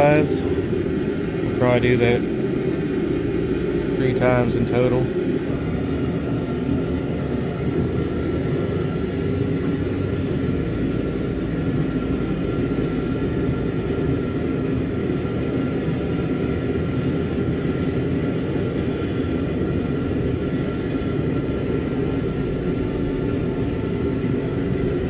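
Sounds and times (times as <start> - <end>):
forge rumbling: 0.0 - 8.0, 19.7 - 25.0.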